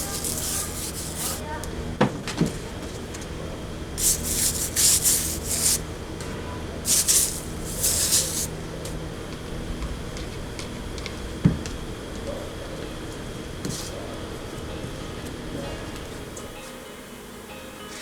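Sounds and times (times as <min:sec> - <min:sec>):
abrasive rubbing strokes: 0:00.0 - 0:01.4, 0:04.0 - 0:05.8, 0:06.9 - 0:08.5.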